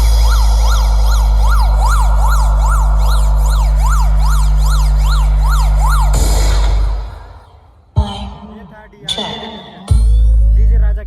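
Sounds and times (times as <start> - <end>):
siren sound effect: 0.0 - 7.8
heavy bass drone: 0.0 - 11.0.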